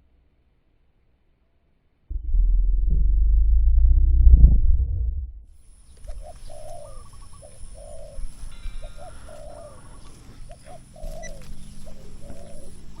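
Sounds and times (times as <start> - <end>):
dove cooing: 6.1 - 13.0.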